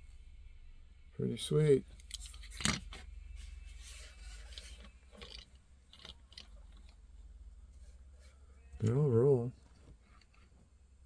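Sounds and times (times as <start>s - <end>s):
scratchy rubbing: 2.1s - 8.9s.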